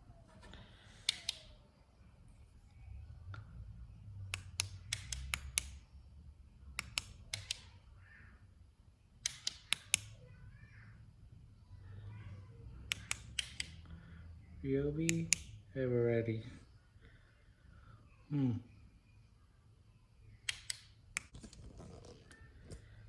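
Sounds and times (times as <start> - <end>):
flashlight switch clicking: 1.0 - 1.5, 4.3 - 5.9, 6.8 - 7.7, 9.2 - 10.2, 12.9 - 13.8, 15.0 - 15.6, 20.4 - 21.3.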